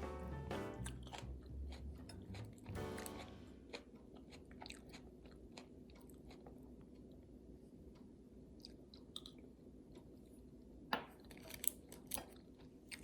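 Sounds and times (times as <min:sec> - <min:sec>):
light background music: 0:00.0 - 0:03.6
person chewing food: 0:00.7 - 0:10.2, 0:11.2 - 0:13.0.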